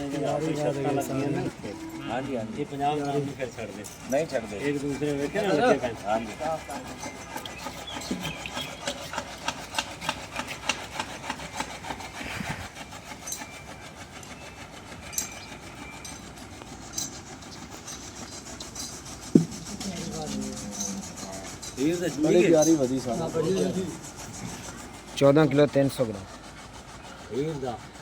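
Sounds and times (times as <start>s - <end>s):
sharp knock: 19.3s - 19.7s.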